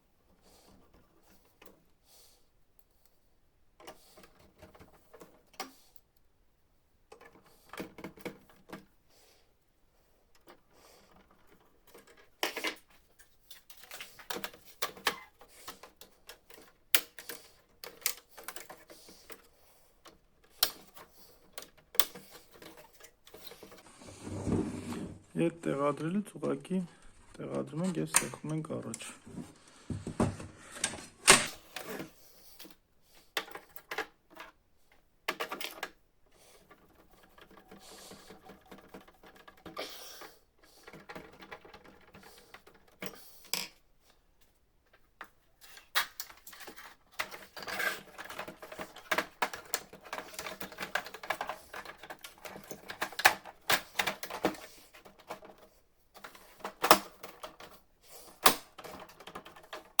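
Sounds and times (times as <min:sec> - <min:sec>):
plastic parts clicking into place: 0:10.3 - 0:23.8, 0:27.0 - 0:32.8, 0:33.4 - 0:36.0, 0:44.4 - 1:00.0.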